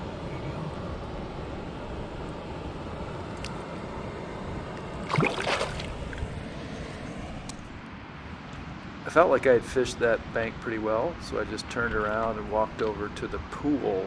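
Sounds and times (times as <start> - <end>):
flowing river water: 0.0 - 9.3
wind: 0.0 - 14.0.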